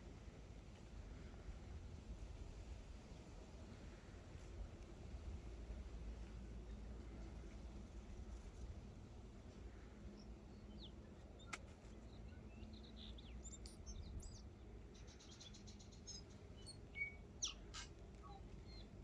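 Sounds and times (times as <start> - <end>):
small birds chirping: 9.6 - 19.0
bird trill: 15.0 - 18.9.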